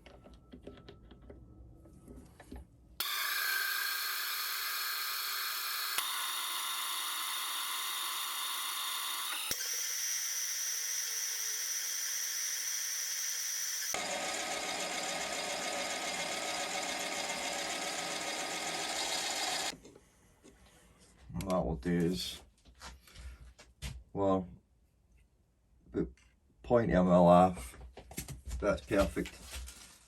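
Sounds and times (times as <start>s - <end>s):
lathe whining: 3.0s - 19.8s.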